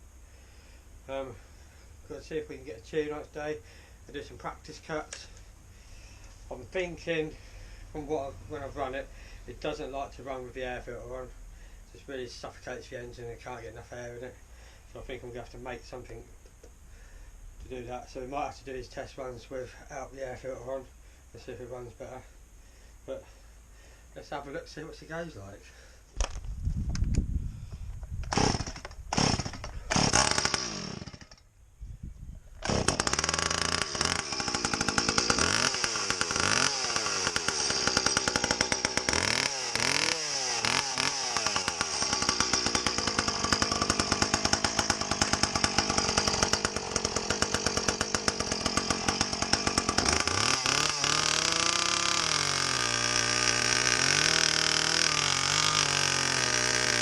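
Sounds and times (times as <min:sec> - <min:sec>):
chainsaw starter cord pulls: 0:28.2 - 0:31.5, 0:32.6 - 0:57.0
chainsaw engine revving and idling: 0:28.3 - 0:31.4, 0:32.6 - 0:57.0.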